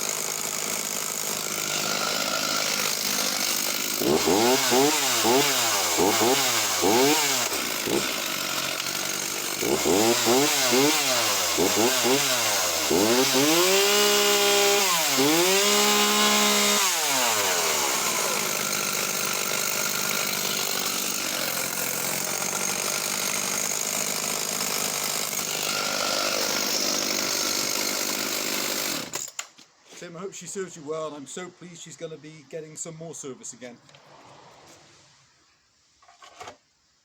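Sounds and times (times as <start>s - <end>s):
chainsaw engine revving: 0.0s - 29.2s.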